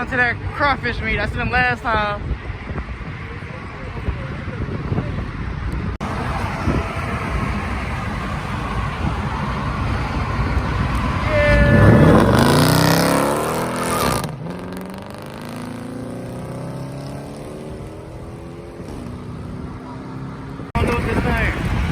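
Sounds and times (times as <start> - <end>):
low engine rumble: 1.8 - 15.0
car driving past: 6.0 - 20.8.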